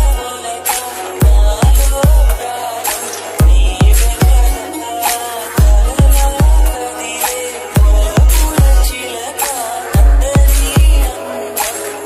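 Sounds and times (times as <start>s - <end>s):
electronic music: 0.0s - 12.0s.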